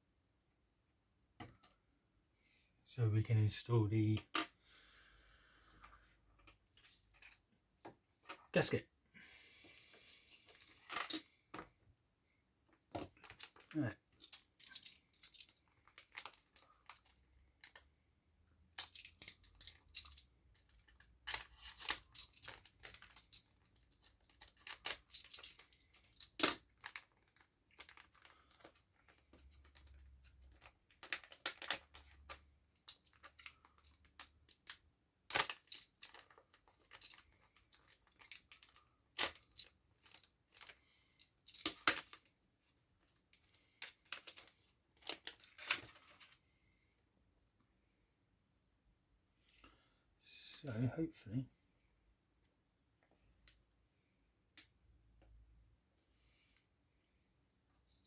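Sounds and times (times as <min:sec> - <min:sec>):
plastic film crackling and peeling: 0:26.7 - 0:32.3.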